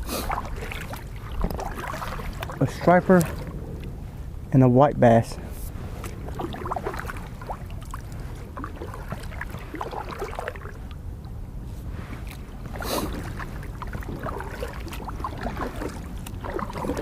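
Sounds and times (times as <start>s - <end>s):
rushing splash: 0.0s - 3.5s, 5.9s - 10.8s, 12.1s - 17.0s
low rumble: 0.0s - 14.4s
water lapping against kayak: 0.0s - 17.0s.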